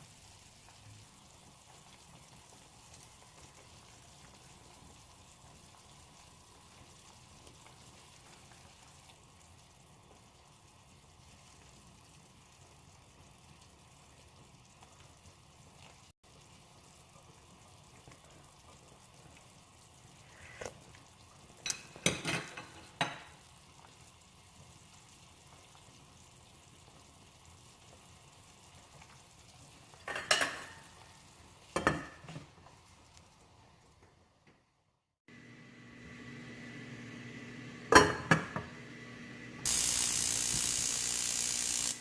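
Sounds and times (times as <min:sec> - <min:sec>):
food hissing on stove: 0:20.0 - 0:21.0, 0:39.6 - 0:42.0.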